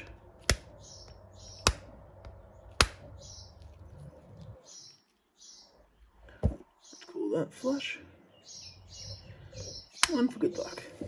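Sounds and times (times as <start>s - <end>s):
light sharp taps: 0.0s - 3.1s
birds chirping: 0.0s - 11.0s.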